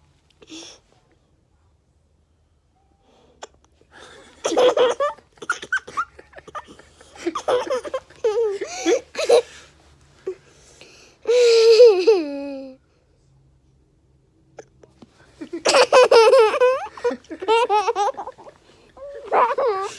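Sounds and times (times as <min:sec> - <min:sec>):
girl giggling and squealing: 0:15.4 - 0:19.9.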